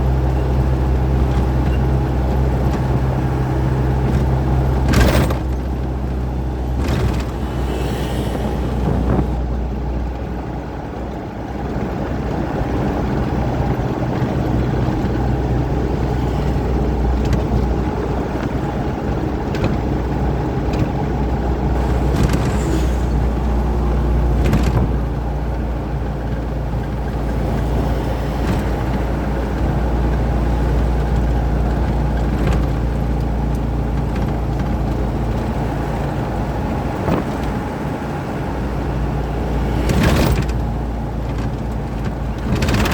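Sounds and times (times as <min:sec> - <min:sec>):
truck engine and road noise: 0:00.0 - 0:42.9
short knocks and rattles: 0:02.5 - 0:09.4, 0:21.7 - 0:42.9.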